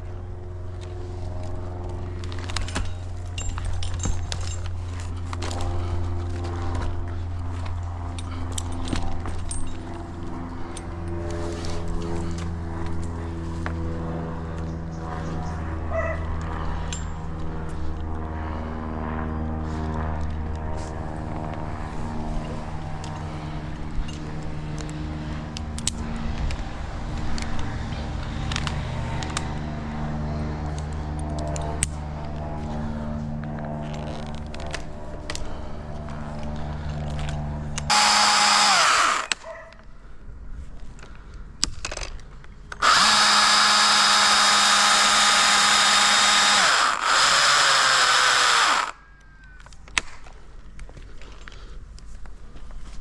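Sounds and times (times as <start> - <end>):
chainsaw idling and revving: 37.8 - 39.4, 42.8 - 49.0.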